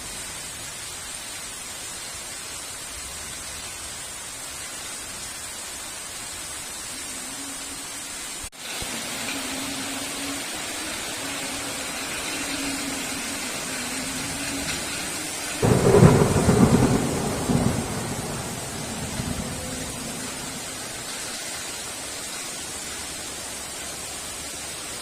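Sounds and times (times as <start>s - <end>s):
heavy rain: 0.0s - 25.0s
thunderclap rumbling: 11.6s - 21.2s.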